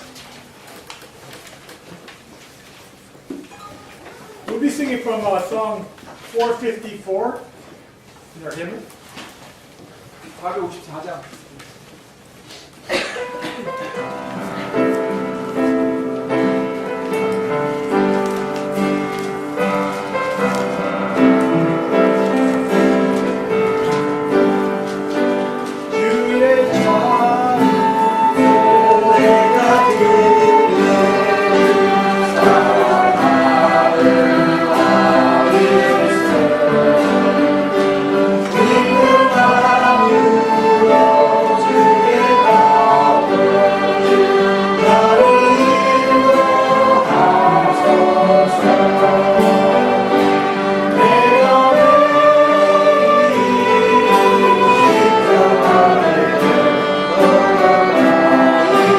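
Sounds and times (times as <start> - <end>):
congregation singing a hymn: 12.9 - 58.9
instrumental accompaniment: 13.2 - 58.9.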